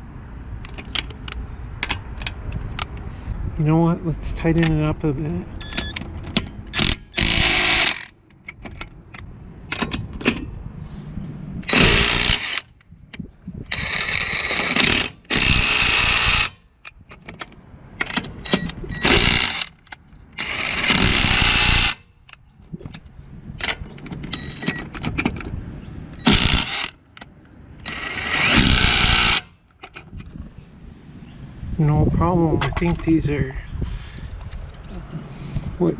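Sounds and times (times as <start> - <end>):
impact wrench hammering: 11.6 - 12.6, 26.2 - 26.9.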